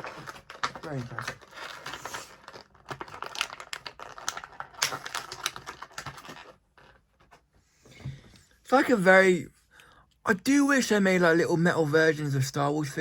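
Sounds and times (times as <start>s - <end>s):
plastic packaging rustling: 0.0s - 7.4s.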